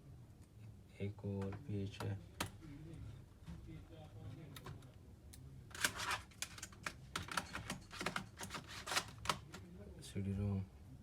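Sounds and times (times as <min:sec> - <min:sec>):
plastic parts scraping: 0:05.7 - 0:09.6
plastic laptop parts clicking: 0:05.7 - 0:09.7.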